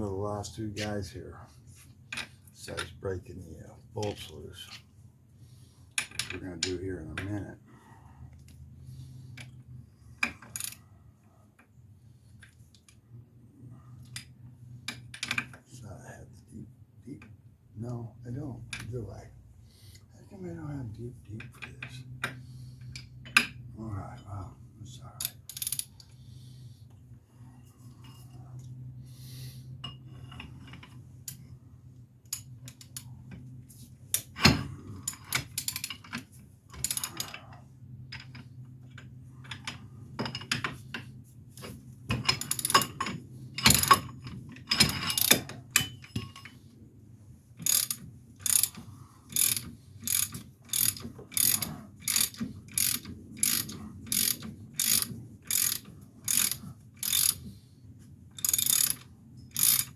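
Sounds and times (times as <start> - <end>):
low steady hum: 0.0 - 59.9
ratchet wrench clicking: 25.2 - 26.1, 36.8 - 37.4, 42.4 - 43.0, 47.6 - 57.5, 58.4 - 59.9.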